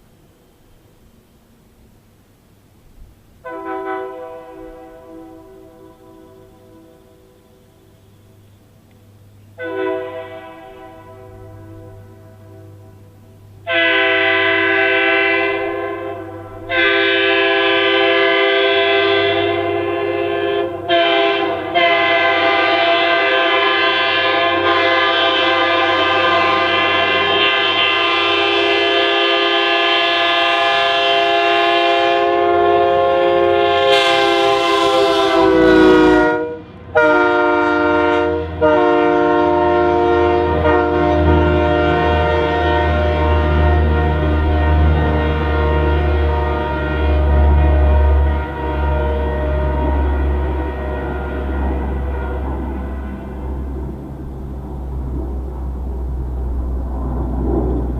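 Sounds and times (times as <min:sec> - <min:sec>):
passing train rumble: 0:00.0 - 0:57.9
locomotive air horn blasts: 0:03.4 - 0:08.7, 0:09.4 - 0:54.6.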